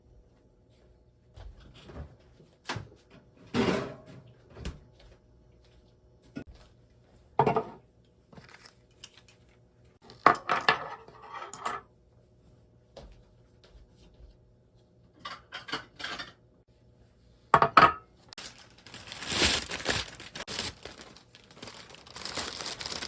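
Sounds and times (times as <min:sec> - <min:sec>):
dishes and cutlery clinking: 0:15.2 - 0:16.4.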